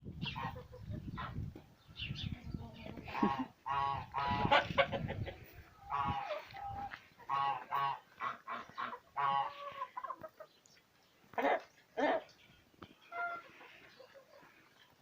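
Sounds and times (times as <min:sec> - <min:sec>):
geese honking: 0:03.0 - 0:05.0, 0:05.8 - 0:10.5, 0:13.0 - 0:14.6.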